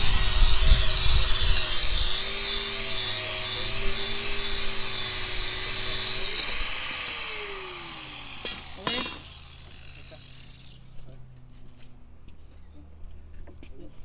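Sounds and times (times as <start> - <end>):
power tool whining: 0.0 - 11.1.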